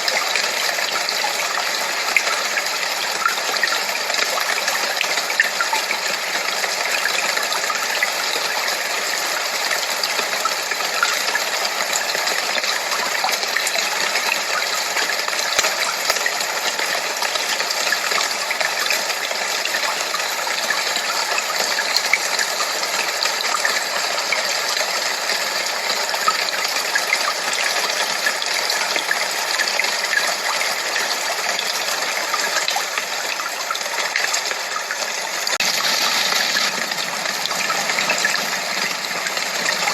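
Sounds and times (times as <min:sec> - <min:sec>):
white noise hiss: 0:35.6 - 0:39.9.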